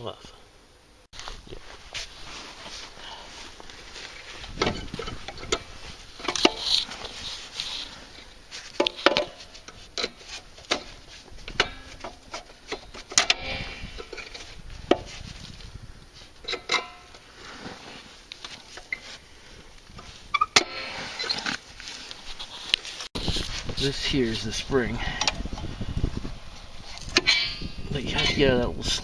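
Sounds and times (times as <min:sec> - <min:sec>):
metal scraping and rattling: 0:01.7 - 0:15.6, 0:20.0 - 0:25.4, 0:26.8 - 0:28.6.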